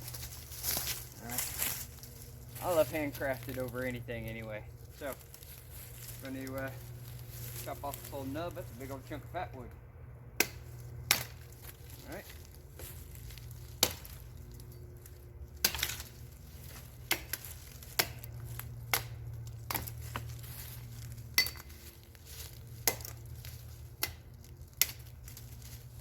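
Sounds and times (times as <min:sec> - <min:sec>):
axe chopping wood: 0:10.4 - 0:12.2, 0:13.7 - 0:14.3, 0:15.5 - 0:25.4.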